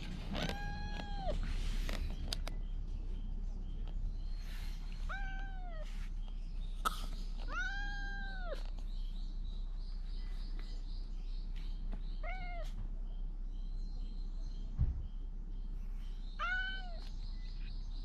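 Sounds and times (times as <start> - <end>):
cat meowing: 0.4 - 1.4, 5.1 - 5.9, 7.5 - 8.6, 12.2 - 12.8, 16.4 - 17.0.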